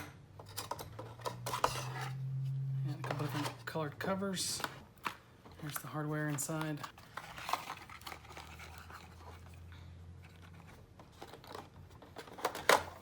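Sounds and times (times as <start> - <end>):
plastic bags rustling: 2.9 - 13.0.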